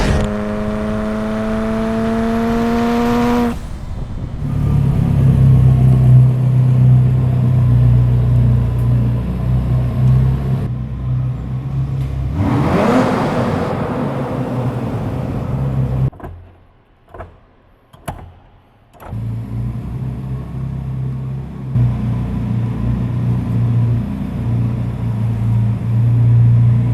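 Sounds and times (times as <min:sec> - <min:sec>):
engine note climbing in pitch: 0:00.0 - 0:07.3
engine rumbling at low revs: 0:00.0 - 0:16.1, 0:19.2 - 0:26.9.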